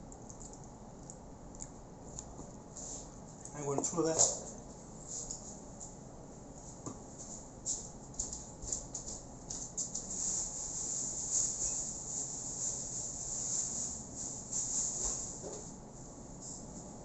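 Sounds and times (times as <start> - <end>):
rustling hiss of kitchen clean-up: 9.8 - 15.8.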